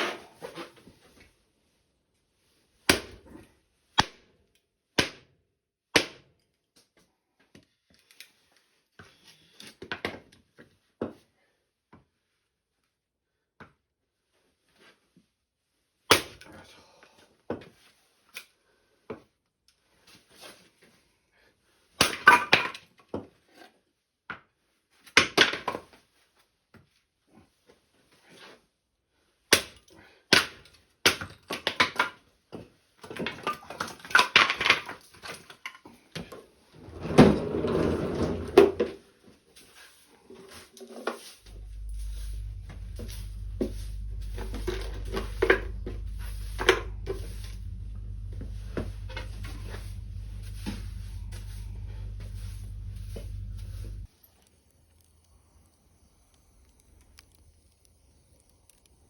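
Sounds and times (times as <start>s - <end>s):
steady low hum: 41.4s - 59.0s.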